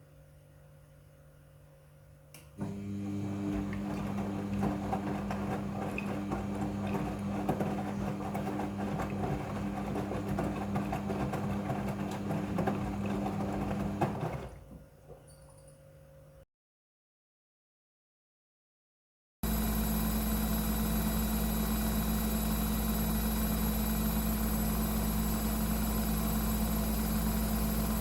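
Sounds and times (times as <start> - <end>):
washing machine motor hum: 2.6 - 15.0, 19.4 - 28.0.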